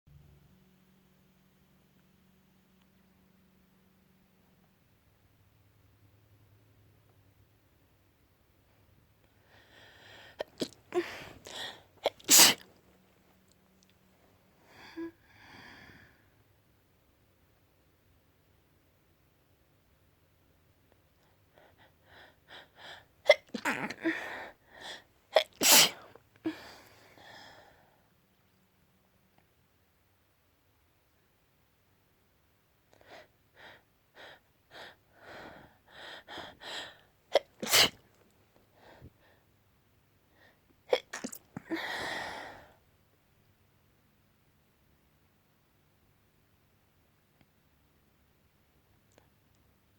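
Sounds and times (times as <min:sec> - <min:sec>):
person sneezing: 0:10.4 - 0:12.7, 0:23.3 - 0:24.4, 0:25.3 - 0:26.6, 0:37.3 - 0:38.0, 0:40.9 - 0:42.1.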